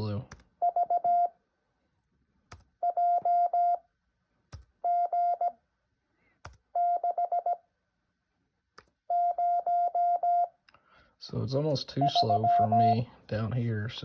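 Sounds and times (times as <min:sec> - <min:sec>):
morse code tone: 0:00.6 - 0:01.3, 0:02.8 - 0:03.8, 0:04.9 - 0:05.5, 0:09.1 - 0:10.5, 0:12.0 - 0:13.0.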